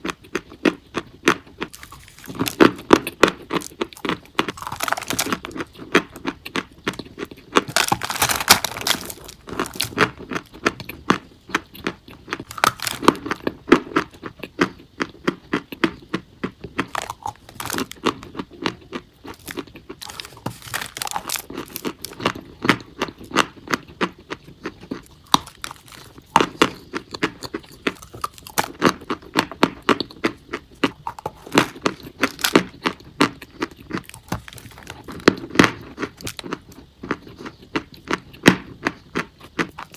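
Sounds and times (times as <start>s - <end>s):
chalk being chewed: 1.6s - 11.0s, 16.8s - 35.4s.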